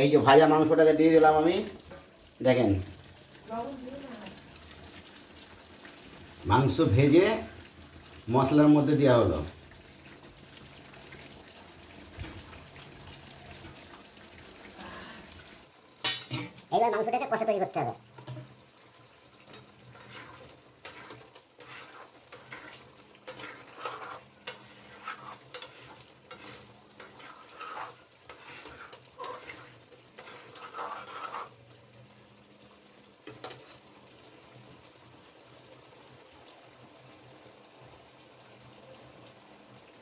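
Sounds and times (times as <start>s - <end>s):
meat sizzling: 0.0s - 40.0s
spatula scraping frying pan: 19.4s - 31.6s, 33.2s - 33.8s.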